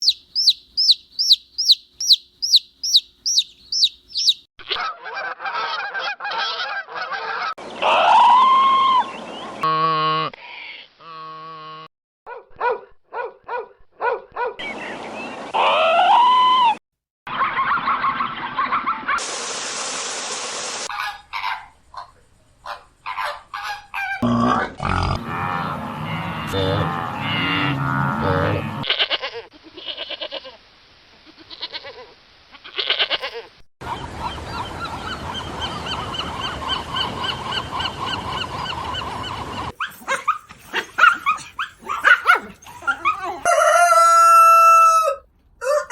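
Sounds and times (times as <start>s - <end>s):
rapid pulsed animal calls: 0.0s - 4.5s
chorus of high animal calls: 22.7s - 28.9s, 35.6s - 45.9s
farm animals honking: 23.2s - 29.3s
dog yipping: 39.7s - 43.9s.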